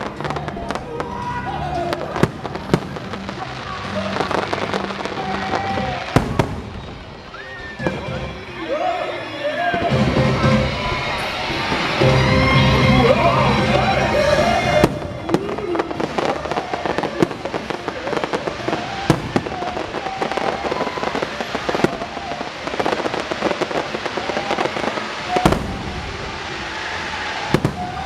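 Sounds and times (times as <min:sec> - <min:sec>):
fireworks bangs and crackles: 0:00.0 - 0:09.1, 0:09.7 - 0:28.0
soundtrack music: 0:07.8 - 0:15.4.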